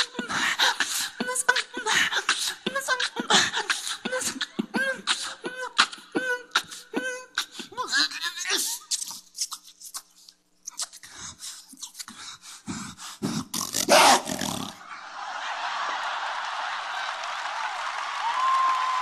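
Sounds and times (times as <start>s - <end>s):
beatboxing clicks and pops: 8.9s - 12.2s, 13.2s - 14.8s
audience applause: 15.3s - 19.0s.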